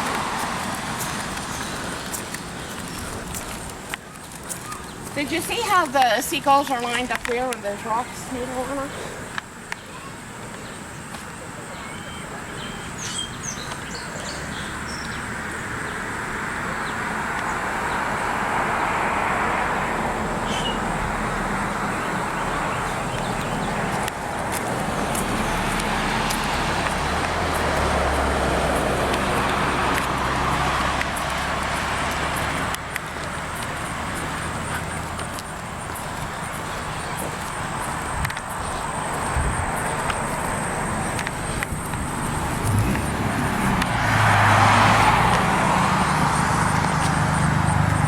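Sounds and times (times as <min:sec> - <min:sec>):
vehicles passing: 0:00.0 - 0:48.0
low engine hum: 0:14.2 - 0:48.0.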